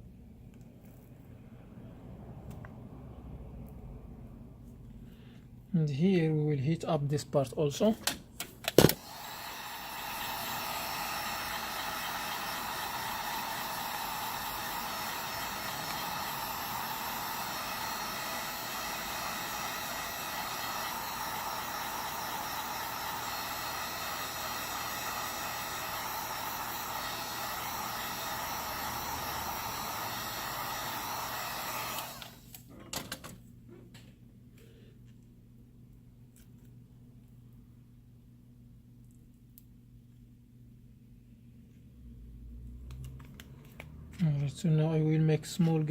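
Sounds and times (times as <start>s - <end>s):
hot-air blower running: 8.7s - 32.6s.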